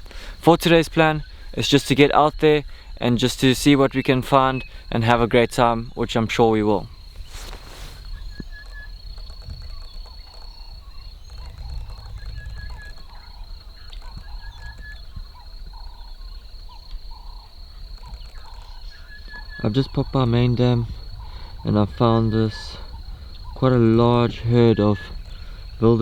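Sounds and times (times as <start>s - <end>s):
insect drone: 0.0s - 26.0s
bird chirps and calls: 3.9s - 26.0s
low rumble: 9.0s - 15.5s, 19.5s - 26.0s.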